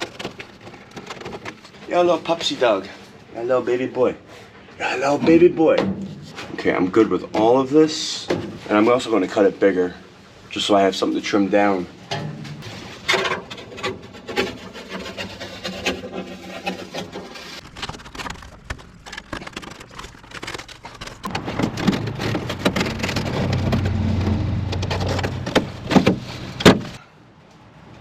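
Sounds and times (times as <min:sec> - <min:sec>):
material scraping and rustling: 0:12.4 - 0:27.0
low rumble: 0:21.2 - 0:26.6.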